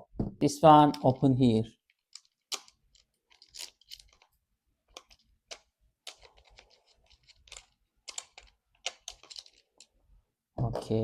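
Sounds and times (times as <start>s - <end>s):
plastic parts clicking: 1.8s - 10.0s.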